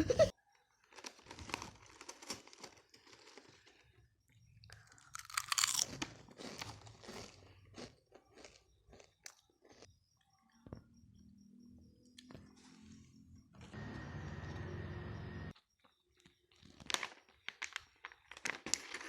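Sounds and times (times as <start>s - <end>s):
crunching and chewing snack: 0.7s - 10.3s, 16.2s - 19.0s.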